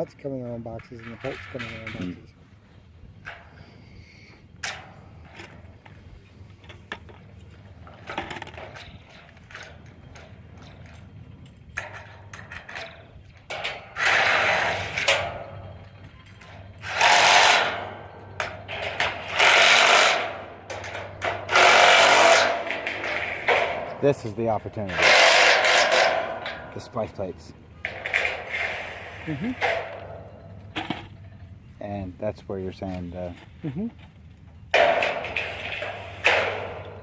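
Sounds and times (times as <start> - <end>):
power tool running nuts: 16.8 - 17.9, 18.6 - 23.8, 24.9 - 26.3.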